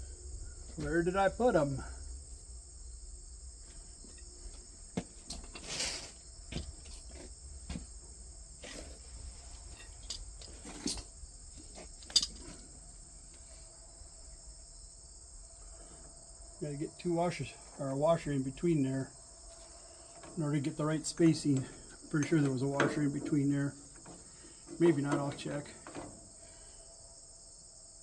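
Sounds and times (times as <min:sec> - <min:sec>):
metal parts and tools clicking: 0:09.6 - 0:12.6.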